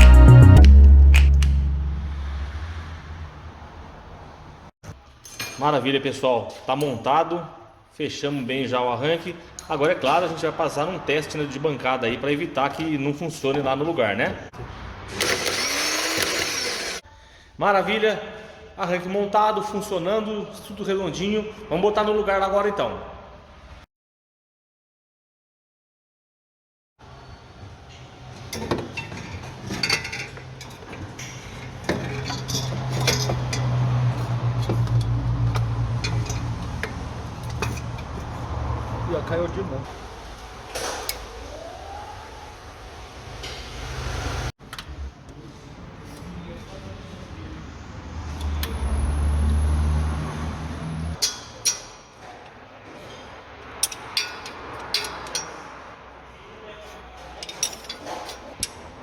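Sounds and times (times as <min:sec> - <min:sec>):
metal tools clinking: 0:28.5 - 0:33.7, 0:36.0 - 0:38.2, 0:53.8 - 0:55.6, 0:57.4 - 0:58.8.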